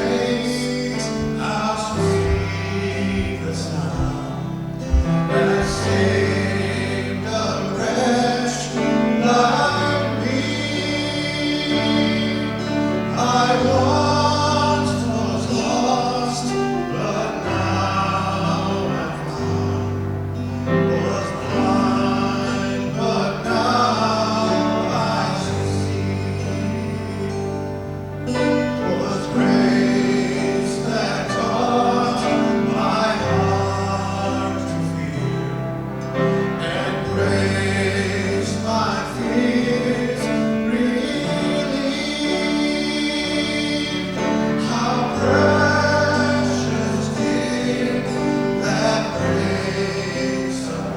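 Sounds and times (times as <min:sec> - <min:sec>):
instrumental accompaniment: 0:00.0 - 0:10.5
voices singing: 0:00.0 - 0:50.9
sustained bass notes: 0:00.7 - 0:07.4.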